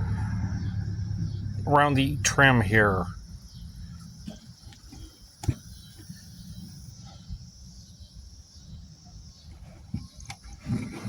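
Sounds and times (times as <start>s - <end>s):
low rumble: 0.0s - 4.2s
insect chirring: 0.0s - 10.6s.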